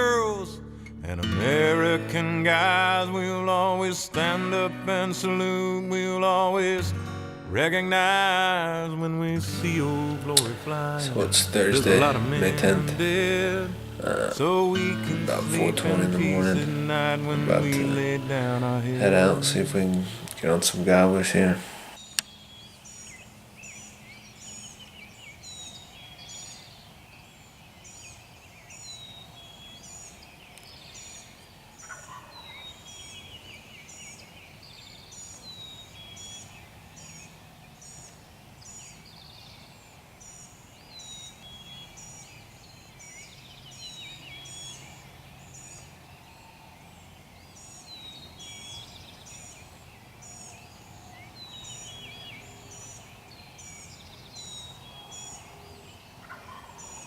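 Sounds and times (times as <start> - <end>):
small birds calling: 0.0 - 6.8, 9.3 - 57.0
wild turkey gobbling: 31.8 - 33.1, 56.2 - 57.0.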